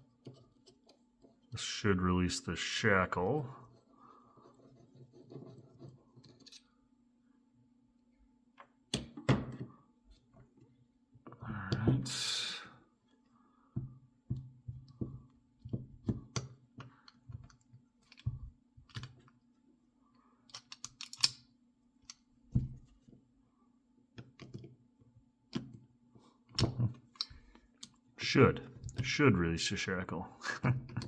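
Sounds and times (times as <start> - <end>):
metal tools clicking on padlock: 20.5 - 22.2.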